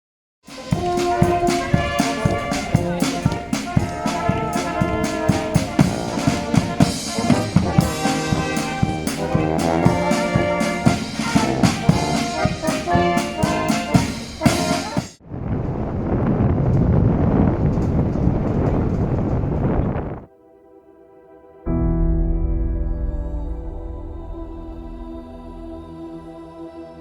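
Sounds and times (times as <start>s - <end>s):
brass band music with drums: 0.4s - 15.2s.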